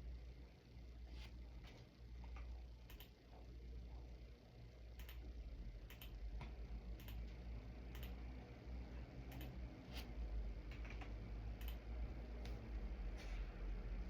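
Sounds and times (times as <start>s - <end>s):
steady low hum: 0.0s - 14.0s
sharp short clicks: 7.9s - 8.2s.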